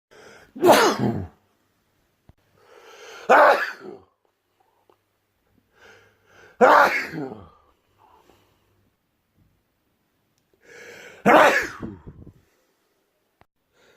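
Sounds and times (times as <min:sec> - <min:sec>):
person sneezing loudly: 0:00.5 - 0:01.4, 0:03.1 - 0:04.1, 0:06.4 - 0:07.7, 0:11.1 - 0:12.3.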